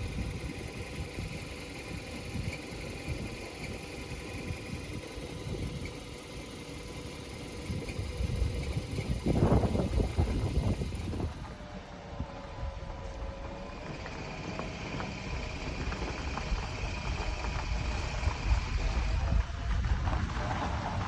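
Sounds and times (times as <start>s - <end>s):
car drivetrain low rumble: 0.0s - 21.0s.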